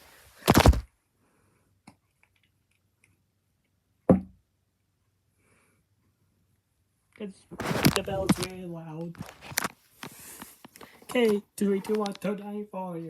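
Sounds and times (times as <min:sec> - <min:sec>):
rustling: 0:00.0 - 0:00.9, 0:07.6 - 0:12.2.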